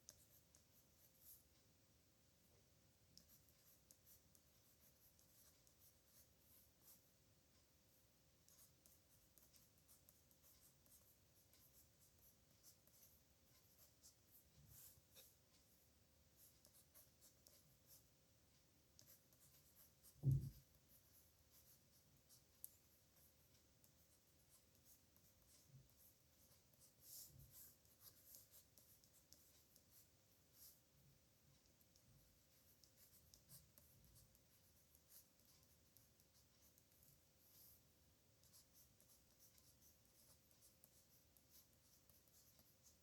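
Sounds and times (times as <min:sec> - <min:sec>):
pen scratching on paper: 0:00.0 - 0:01.4, 0:03.2 - 0:07.1, 0:08.5 - 0:18.1, 0:19.0 - 0:30.8, 0:31.6 - 0:43.0
low thump: 0:20.2 - 0:20.6.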